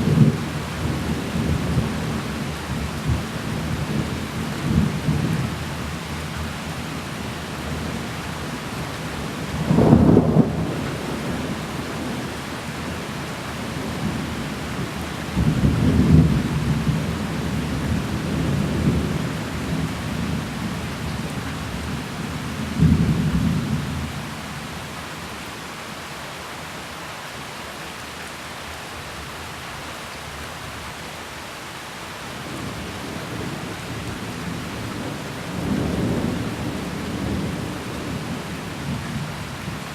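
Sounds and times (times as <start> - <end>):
steady rain: 0.0 - 39.9
thunder rolling: 9.6 - 11.3.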